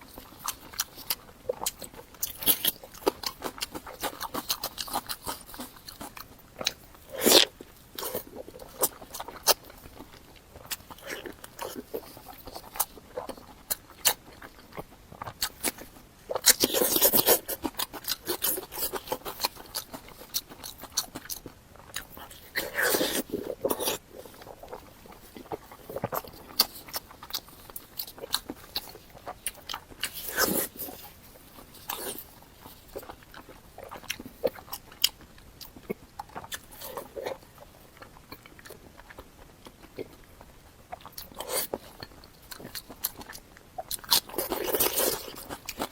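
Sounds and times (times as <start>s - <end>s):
person chewing and biting: 0.0s - 45.9s.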